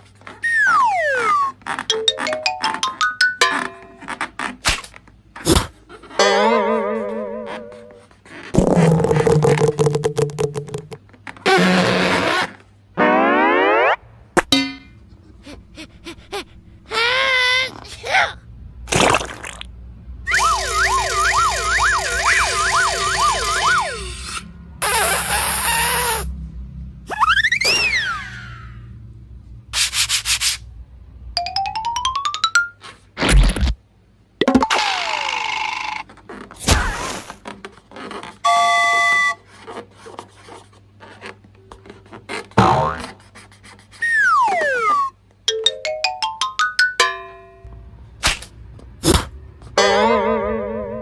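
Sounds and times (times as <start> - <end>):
falling whistle: 0.4 - 1.6, 20.3 - 26.3, 27.1 - 28.8, 38.5 - 39.4, 44.0 - 45.2
siren-like wailing tone: 0.5 - 2.2, 13.0 - 14.0, 20.3 - 24.2, 44.3 - 45.1
cartoon thump: 36.6 - 37.2.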